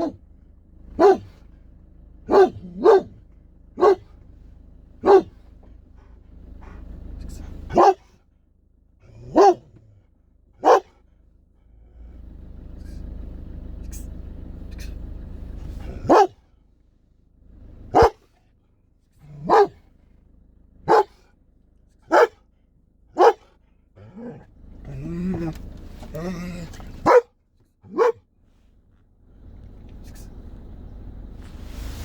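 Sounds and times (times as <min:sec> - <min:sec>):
dog barking: 0:00.0 - 0:00.2, 0:00.8 - 0:01.5, 0:02.2 - 0:04.2, 0:05.0 - 0:05.5, 0:06.5 - 0:08.2, 0:09.2 - 0:09.8, 0:10.6 - 0:11.0, 0:15.8 - 0:16.4, 0:17.8 - 0:18.3, 0:19.2 - 0:19.9, 0:20.8 - 0:21.3, 0:22.0 - 0:22.4, 0:23.1 - 0:24.5, 0:26.7 - 0:27.3, 0:27.9 - 0:28.3
steady low rumble: 0:00.0 - 0:27.2, 0:27.8 - 0:32.0.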